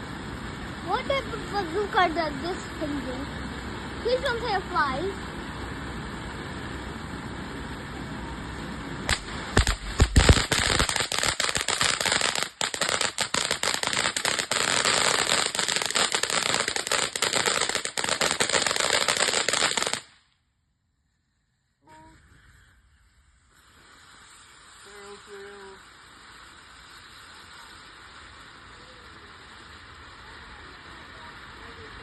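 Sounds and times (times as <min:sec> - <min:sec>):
firework bangs: 0:00.0 - 0:20.2, 0:22.0 - 0:32.0
rapid crackling pops: 0:09.0 - 0:20.2.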